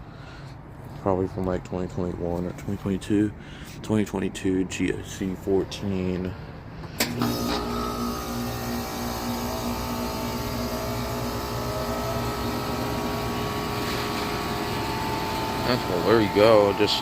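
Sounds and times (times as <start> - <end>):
compressor and fan humming: 6.8 - 17.0.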